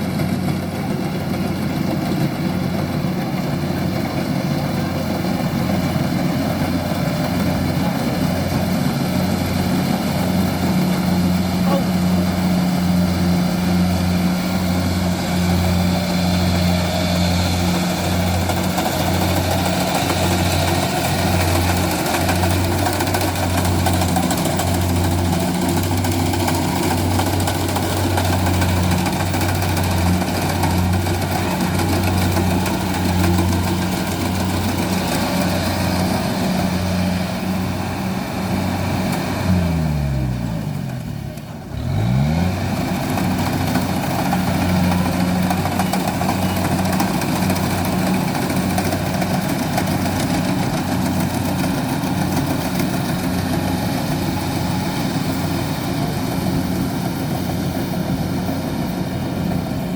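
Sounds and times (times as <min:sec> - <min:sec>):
diesel engine running under load: 0:00.0 - 0:59.9
machine clatter: 0:17.4 - 0:36.3, 0:42.9 - 0:57.2.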